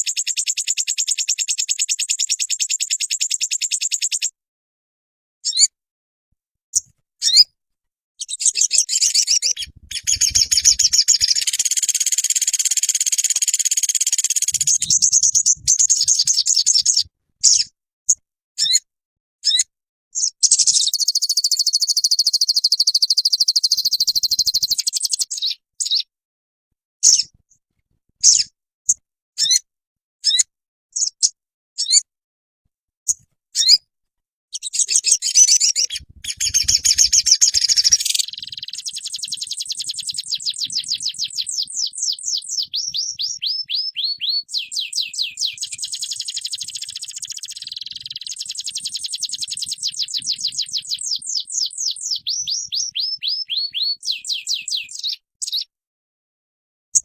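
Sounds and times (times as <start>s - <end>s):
songbird chirps and trills: 8.2s - 17.7s, 19.5s - 26.1s, 34.6s - 55.7s.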